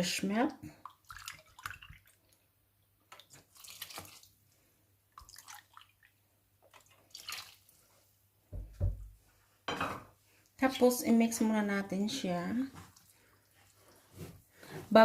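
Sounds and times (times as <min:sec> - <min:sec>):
milk pouring into a bowl: 0:00.7 - 0:02.5, 0:03.1 - 0:04.4, 0:05.1 - 0:08.0.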